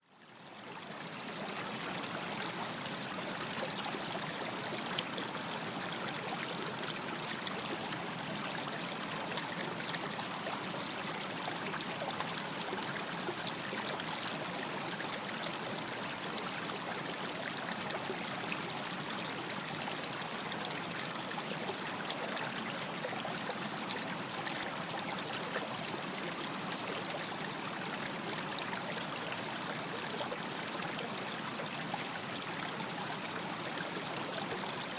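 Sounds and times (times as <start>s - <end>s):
stream of running water: 0.1s - 34.9s.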